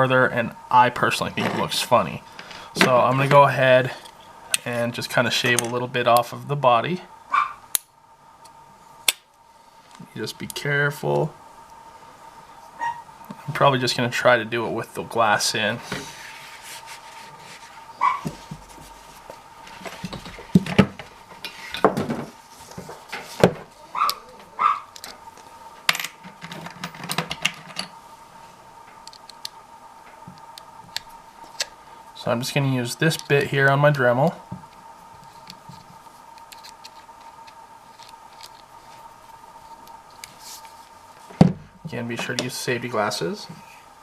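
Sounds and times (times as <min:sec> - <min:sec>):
faint hum: 0:00.0 - 0:44.0
tools clicking and knocking on workbench: 0:25.9 - 0:27.9.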